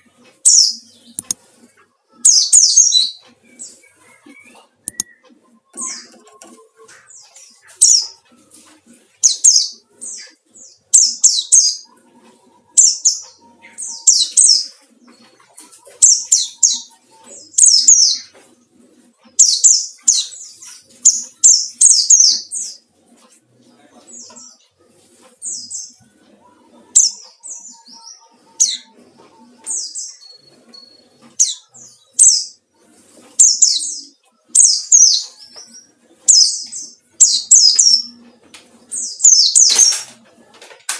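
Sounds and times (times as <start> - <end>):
bird chirping high-pitched phrases: 2.1 - 8.3, 25.5 - 32.7.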